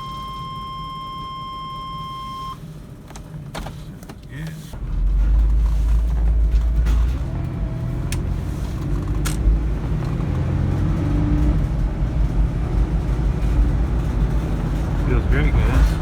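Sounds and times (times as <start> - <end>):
van engine rumble from inside: 0.0 - 16.0
van body clicks and rattles: 2.8 - 15.2.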